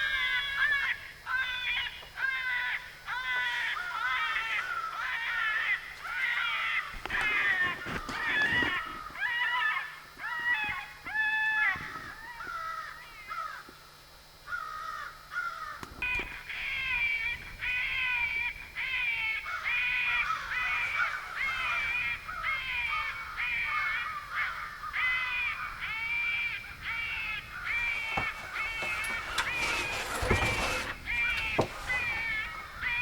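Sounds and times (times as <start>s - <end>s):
crow cawing: 0.0s - 33.0s.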